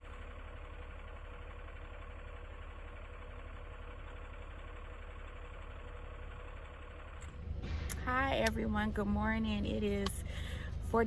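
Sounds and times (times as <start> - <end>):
diesel engine low rumble: 0.0 - 11.0
faint steady hum: 7.3 - 11.0.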